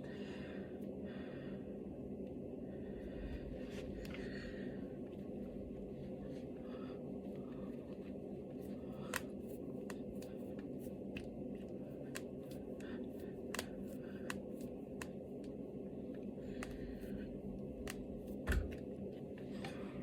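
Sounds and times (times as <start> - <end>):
low room hum: 0.0 - 20.0
knuckles cracking: 8.9 - 15.6, 17.8 - 18.8.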